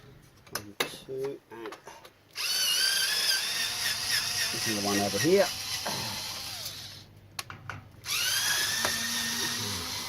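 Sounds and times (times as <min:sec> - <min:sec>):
cordless drill whining: 0:02.4 - 0:07.0, 0:08.0 - 0:10.0.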